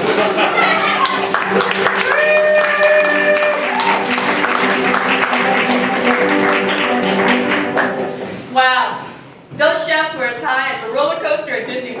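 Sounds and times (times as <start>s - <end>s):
music: 0.0s - 8.5s
audience applause: 0.2s - 8.2s.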